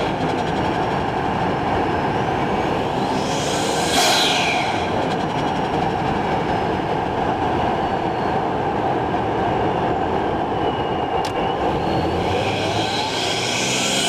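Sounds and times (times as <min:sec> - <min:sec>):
car engine rumble: 0:00.0 - 0:07.8.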